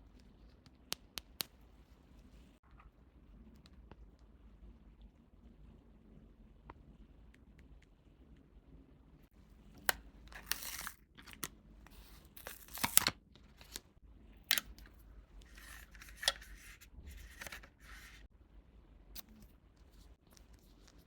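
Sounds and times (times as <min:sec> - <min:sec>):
packaging tearing and crinkling: 0:10.3 - 0:13.8.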